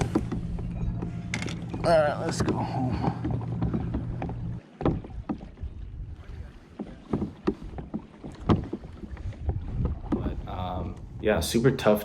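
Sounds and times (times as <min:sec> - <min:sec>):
low rumble: 0:00.0 - 0:04.6
water splashing against hull: 0:00.0 - 0:11.8.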